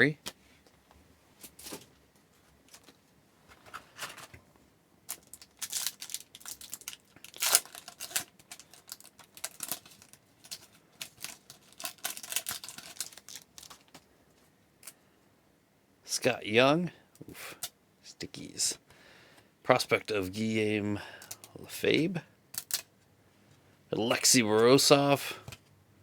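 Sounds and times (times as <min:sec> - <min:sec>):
wrapper tearing and crinkling: 0:05.1 - 0:14.0, 0:22.6 - 0:22.9.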